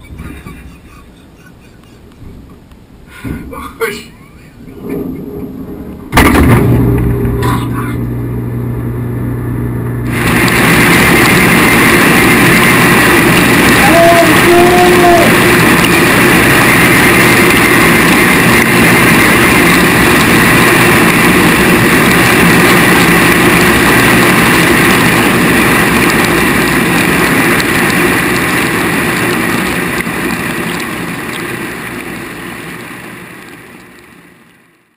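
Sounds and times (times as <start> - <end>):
dishwasher running: 4.7 - 27.9.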